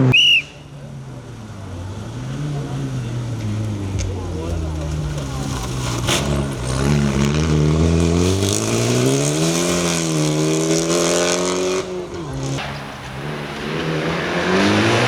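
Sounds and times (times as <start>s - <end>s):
car engine accelerating hard: 0.8s - 15.0s
sharp crack: 4.1s - 11.4s, 12.5s - 15.0s.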